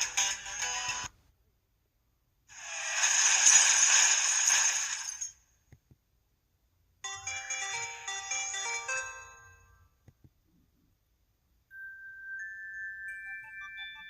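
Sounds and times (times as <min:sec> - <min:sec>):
electronic chime melody: 0:07.1 - 0:09.8, 0:11.7 - 0:14.0
jingling phone ring: 0:07.1 - 0:09.8, 0:11.8 - 0:14.0.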